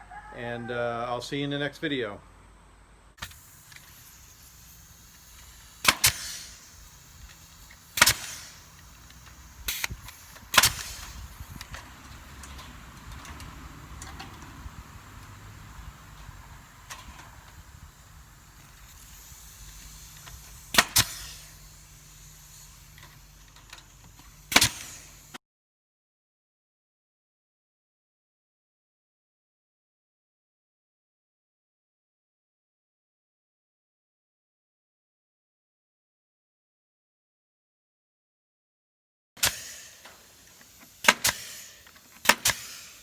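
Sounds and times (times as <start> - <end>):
faint steady background noise: 0.0 - 25.4.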